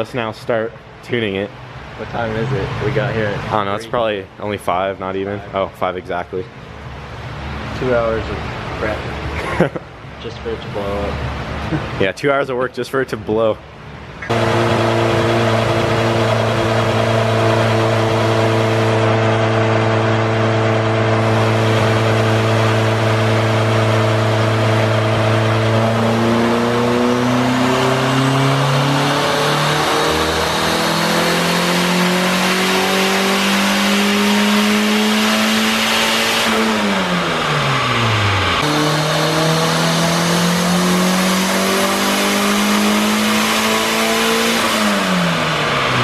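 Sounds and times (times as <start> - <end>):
turbocharged car engine revving: 1.1 - 4.2, 13.8 - 46.0.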